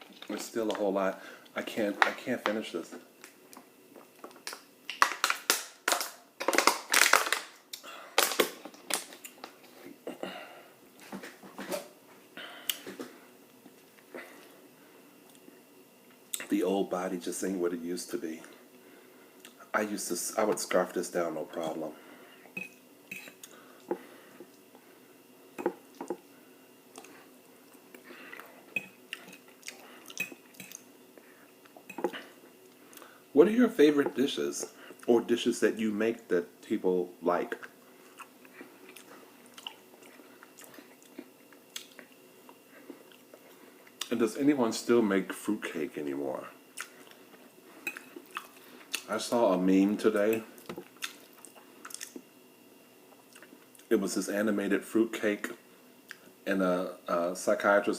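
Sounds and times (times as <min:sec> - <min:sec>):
chewing crunchy food: 0:26.9 - 0:30.9, 0:37.6 - 0:44.1, 0:46.7 - 0:49.1, 0:50.2 - 0:52.3.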